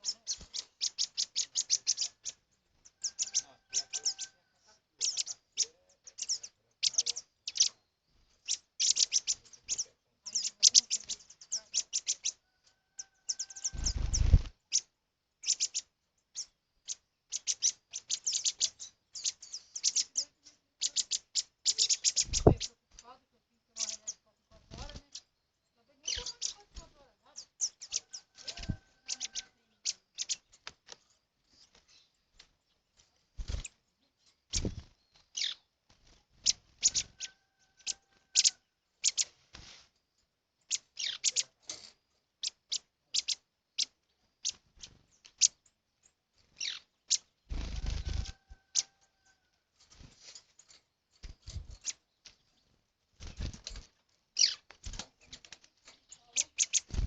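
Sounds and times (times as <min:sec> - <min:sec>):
birds chirping: 0:00.0 - 0:39.4, 0:40.2 - 0:57.0.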